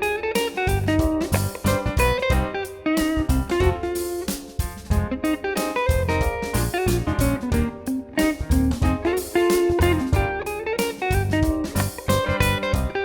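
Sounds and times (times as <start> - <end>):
plucked guitar instrumental: 0.0 - 13.0
steady bass beat: 0.7 - 2.5, 3.2 - 3.9, 4.6 - 5.2, 5.9 - 10.4, 11.1 - 13.0.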